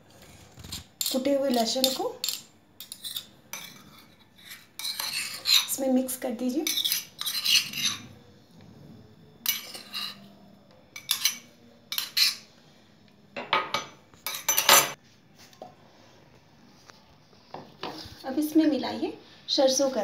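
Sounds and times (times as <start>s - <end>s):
spoon scraping against bowl: 0.1s - 8.2s, 9.4s - 10.4s, 11.0s - 12.5s, 14.2s - 15.0s.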